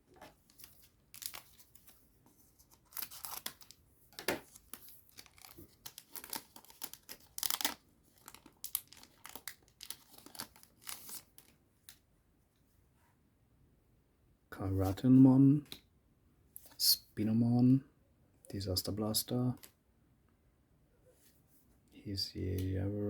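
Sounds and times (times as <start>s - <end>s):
wrapper tearing and crinkling: 0.5s - 1.8s, 2.8s - 11.5s.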